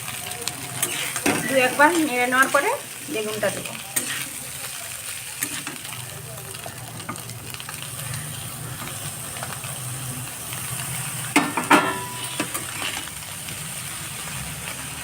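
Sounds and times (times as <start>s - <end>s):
potatoes and onion sizzling in oil: 0.0s - 15.0s
metal spatula clanking against pan: 11.4s - 13.0s.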